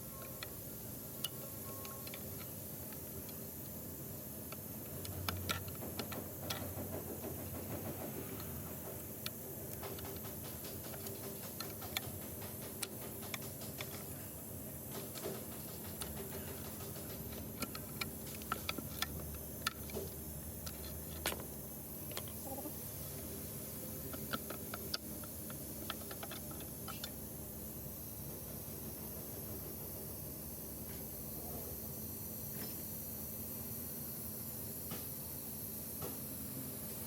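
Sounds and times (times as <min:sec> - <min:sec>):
steady low hum: 0:00.0 - 0:37.0
tools clicking and tapping: 0:01.2 - 0:03.8, 0:04.5 - 0:14.2, 0:14.9 - 0:21.5, 0:24.0 - 0:27.2.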